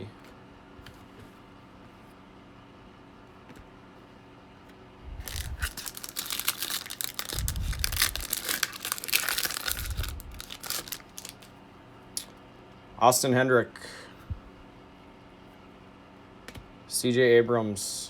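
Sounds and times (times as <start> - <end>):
wrapper tearing and crinkling: 5.2 - 11.5.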